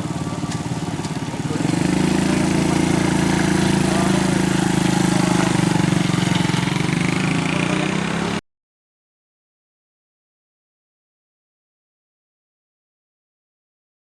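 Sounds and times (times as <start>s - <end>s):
large engine running: 0.0s - 8.4s.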